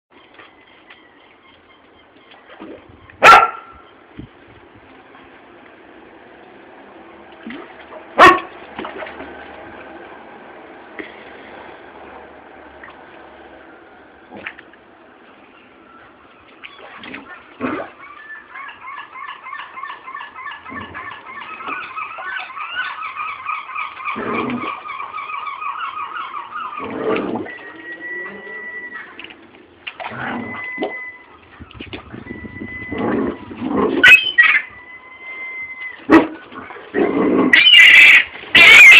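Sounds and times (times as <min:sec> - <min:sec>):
gull chick peeping: 0:16.6 - 0:27.0.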